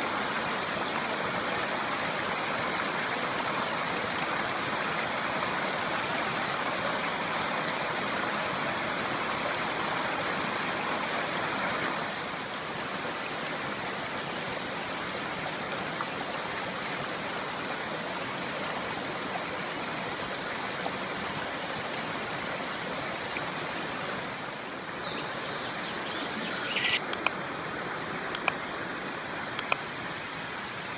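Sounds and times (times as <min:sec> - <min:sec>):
river water flowing: 0:00.0 - 0:30.9
bird call: 0:25.0 - 0:27.1.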